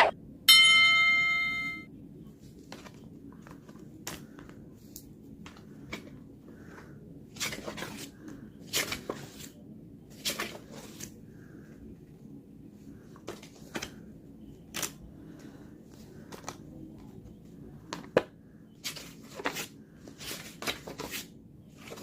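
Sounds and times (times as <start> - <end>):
bell ringing: 0.5 - 1.9
paper pages rustling: 2.4 - 11.2, 17.9 - 22.0.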